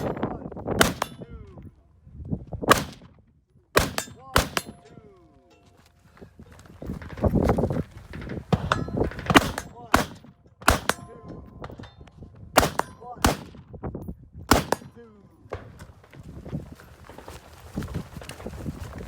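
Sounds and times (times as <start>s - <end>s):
rifle shots: 0.8s - 1.5s, 2.7s - 3.1s, 3.8s - 4.8s, 8.5s - 11.2s, 12.6s - 13.7s, 14.5s - 15.0s
steel targets clanging: 3.8s - 5.8s.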